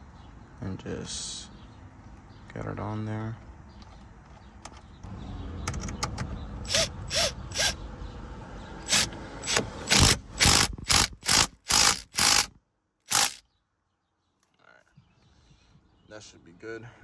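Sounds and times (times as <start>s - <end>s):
ratchet wrench ratcheting: 8.8s - 13.4s.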